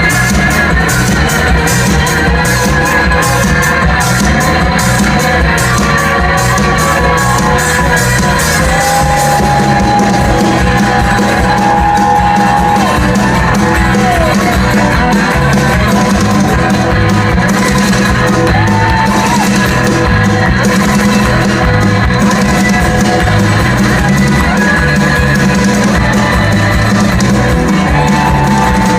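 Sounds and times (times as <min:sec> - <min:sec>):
live rock band playing: 0:00.0 - 0:28.9.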